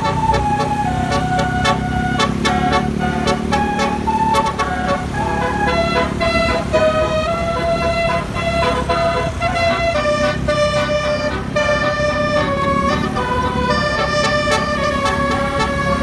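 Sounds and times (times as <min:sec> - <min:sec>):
multi-tone horn melody: 0:00.0 - 0:16.0.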